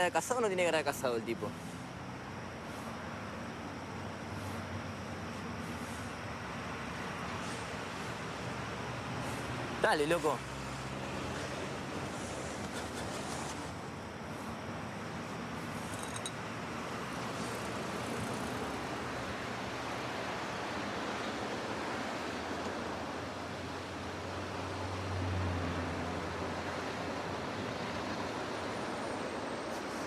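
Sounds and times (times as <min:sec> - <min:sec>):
street traffic noise: 0:00.0 - 0:30.0
passing vehicle engine hum: 0:01.1 - 0:30.0.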